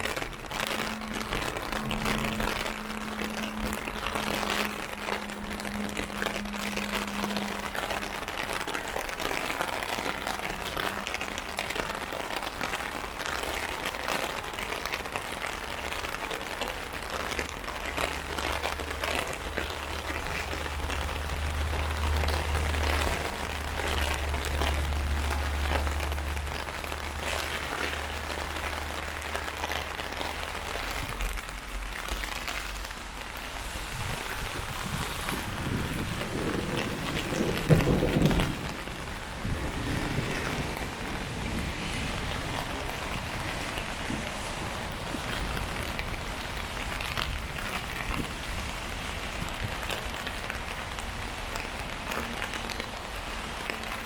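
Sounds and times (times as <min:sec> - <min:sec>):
heavy rain on an umbrella: 0:00.0 - 0:54.0
low hum: 0:00.1 - 0:08.7
deep low drone: 0:00.1 - 0:09.4.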